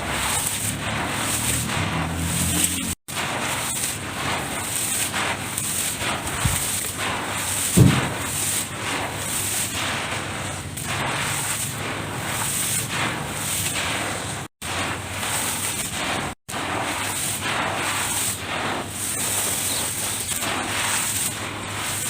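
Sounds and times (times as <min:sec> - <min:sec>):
low thump: 0:07.8 - 0:08.2.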